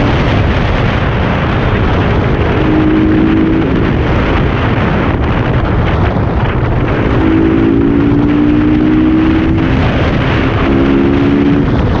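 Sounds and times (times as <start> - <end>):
motorcycle engine running: 0.0 - 12.0
wind rush on microphone: 0.0 - 12.0.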